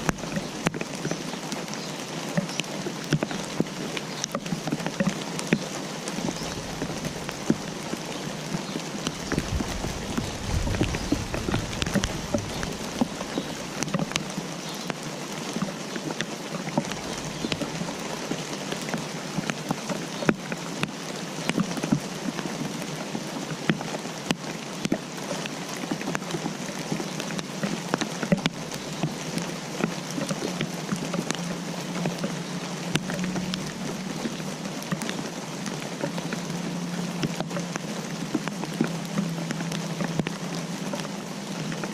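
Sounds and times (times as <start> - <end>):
raindrops ticking on a surface: 0.0 - 41.9
steady rain: 0.0 - 41.9
low rumble: 9.1 - 14.2.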